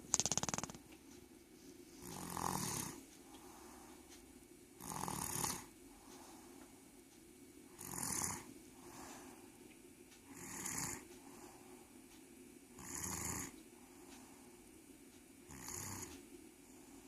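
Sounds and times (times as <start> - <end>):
faint breaths: 1.4 - 17.0
person snoring: 2.0 - 3.0, 4.8 - 5.7, 7.8 - 8.5, 10.3 - 11.1, 12.8 - 13.6, 15.5 - 16.2.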